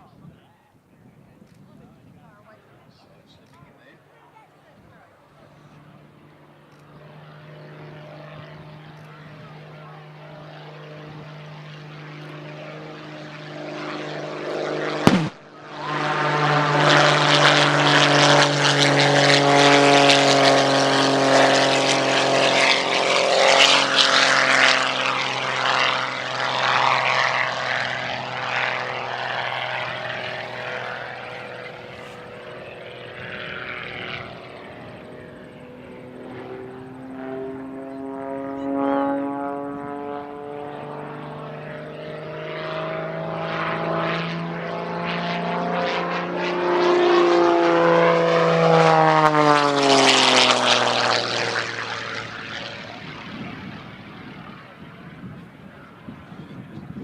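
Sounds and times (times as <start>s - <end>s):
propeller plane flying past: 0.0s - 57.0s
sharp crack: 15.0s - 15.6s.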